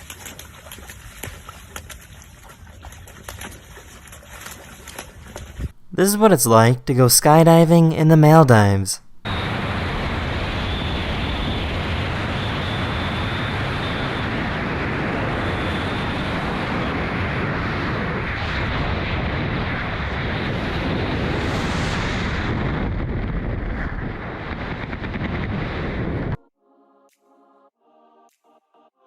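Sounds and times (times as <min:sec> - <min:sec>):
wind rushing on microphone: 0:05.2 - 0:05.8, 0:09.3 - 0:26.4.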